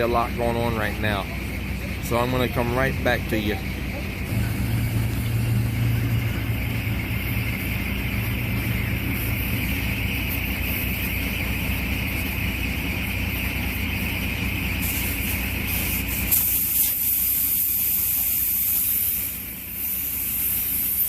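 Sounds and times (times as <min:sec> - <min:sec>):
vehicle engine running: 0:00.0 - 0:21.0
air hissing from tires: 0:04.3 - 0:21.0.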